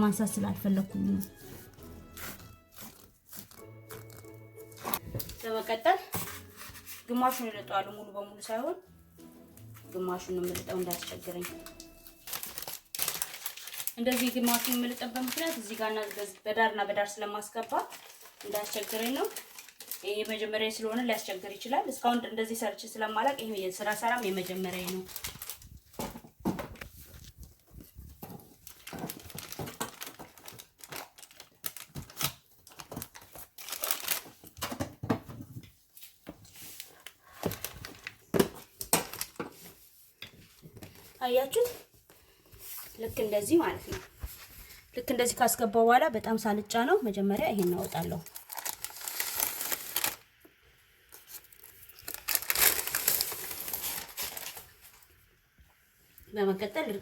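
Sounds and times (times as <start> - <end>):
vinyl plank crinkling and scraping: 0.6 - 7.7, 9.6 - 16.5, 23.3 - 34.6, 47.2 - 50.2.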